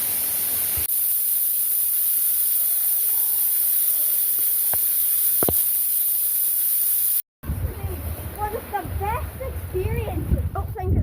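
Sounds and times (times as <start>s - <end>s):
waterfall hiss: 0.0s - 7.2s.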